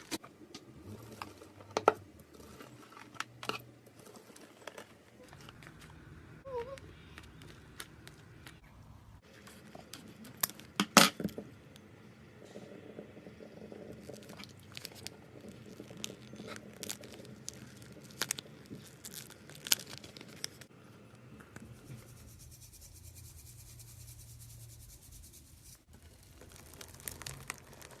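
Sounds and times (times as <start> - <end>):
wet crinkly slime rustle: 14.0 - 20.7, 25.9 - 28.0.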